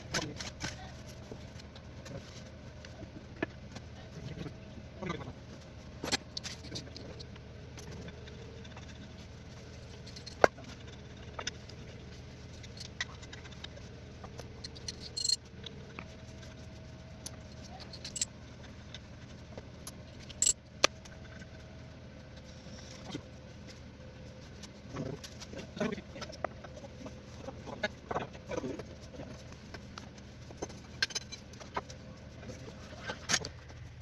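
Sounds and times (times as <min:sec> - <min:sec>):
steady low hum: 0:00.0 - 0:34.0
metallic tool clinks and knocks: 0:14.6 - 0:15.4, 0:17.8 - 0:18.3, 0:20.2 - 0:20.6.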